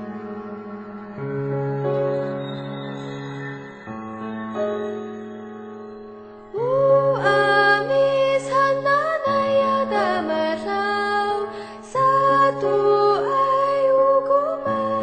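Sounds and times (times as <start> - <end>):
slow sung melody over chords: 0.0 - 15.0.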